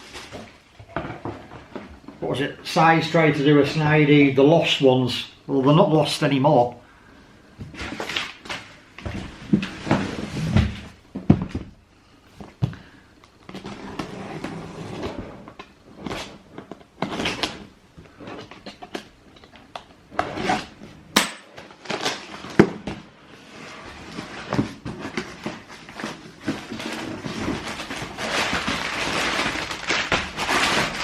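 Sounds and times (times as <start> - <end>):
cardboard boxes rustling and scraping: 7.7 - 11.7, 13.4 - 19.1, 21.8 - 31.0.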